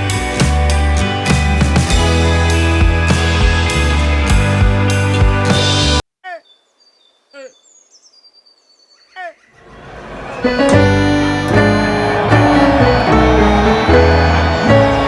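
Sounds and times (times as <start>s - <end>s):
song backing track: 0.0s - 5.9s, 10.4s - 15.0s
bird chirping: 6.3s - 15.0s
thin high whistles: 9.6s - 15.0s.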